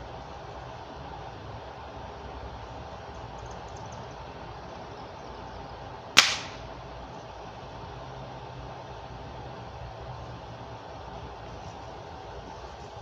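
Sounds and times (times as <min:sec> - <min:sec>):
steady background hiss: 0:00.0 - 0:13.0
air rifle crack: 0:06.2 - 0:06.7.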